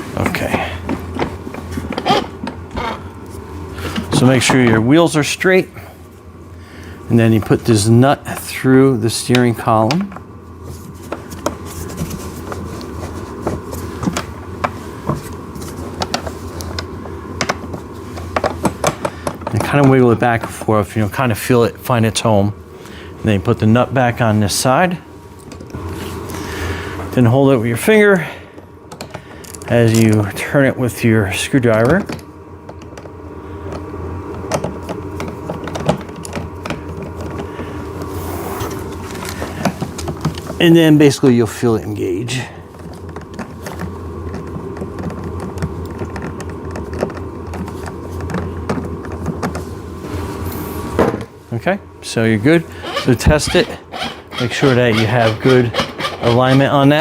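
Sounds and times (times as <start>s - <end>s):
steady low hum: 0.0s - 57.0s
screwdriver turning a bolt in plastic: 52.9s - 56.8s.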